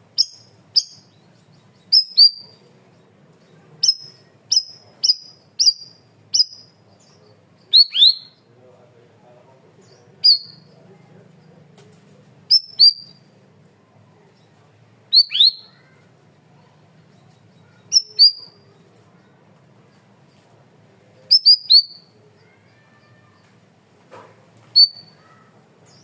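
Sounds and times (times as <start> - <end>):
faint low hum: 0.0 - 26.0
songbird whistled notes: 1.8 - 2.6, 3.8 - 6.8, 7.7 - 8.5, 10.2 - 10.7, 12.5 - 13.3, 15.1 - 15.8, 17.7 - 18.6, 21.3 - 22.1, 24.7 - 25.3.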